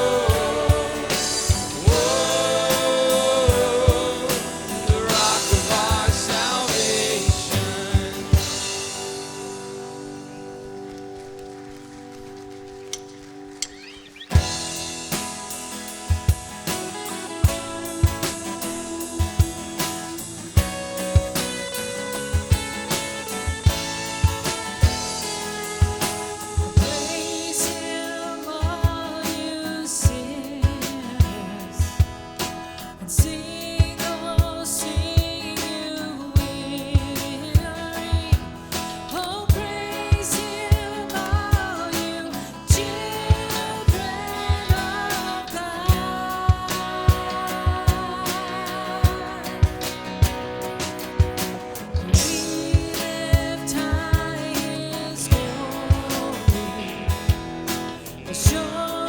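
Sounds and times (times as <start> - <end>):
singing: 0.0 - 9.5, 23.2 - 50.5, 51.9 - 59.0
drum kit beat: 0.0 - 10.5, 14.3 - 59.0
worship band playing: 0.0 - 59.0.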